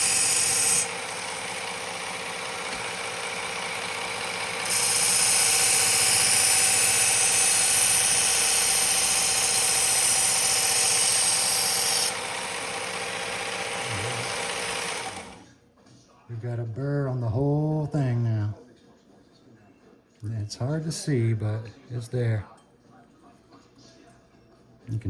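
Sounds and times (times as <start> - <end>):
belt grinder running: 0.0 - 15.5.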